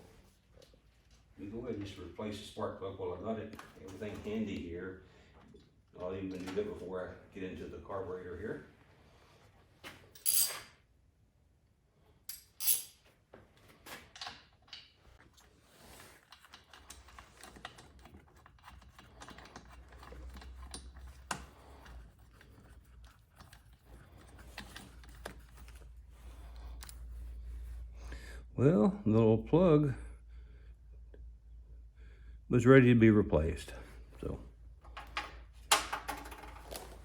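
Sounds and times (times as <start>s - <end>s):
metal tool clicks and clatter: 10.2s - 10.8s, 12.3s - 13.0s.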